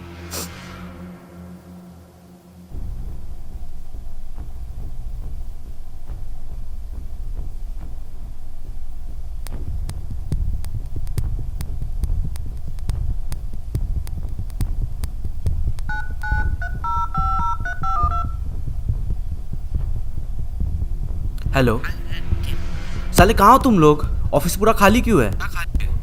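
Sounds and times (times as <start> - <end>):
low throbbing drone: 0.0 - 16.8, 18.3 - 25.4
phone keypad touch tones: 15.9 - 18.4.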